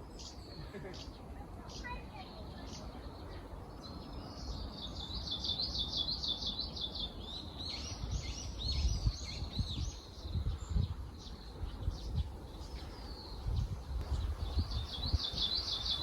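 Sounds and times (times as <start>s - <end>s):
bird chirping: 0.0s - 16.0s.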